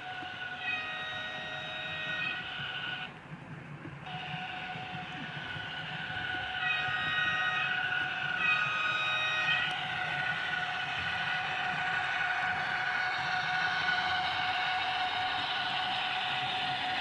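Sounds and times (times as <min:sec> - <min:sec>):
model locomotive running hum: 0:00.0 - 0:17.0
locomotive horn blasts: 0:00.6 - 0:02.4, 0:08.4 - 0:10.2.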